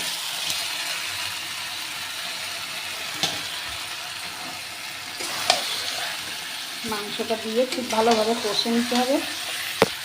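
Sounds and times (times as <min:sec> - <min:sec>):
chicken sizzling in hot oil: 0:00.0 - 0:10.0.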